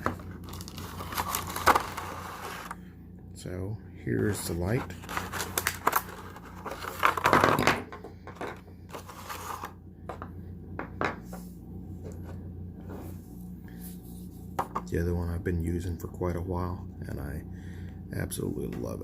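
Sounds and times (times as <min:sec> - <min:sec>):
packaging rustling: 0:00.0 - 0:02.8, 0:04.2 - 0:07.4.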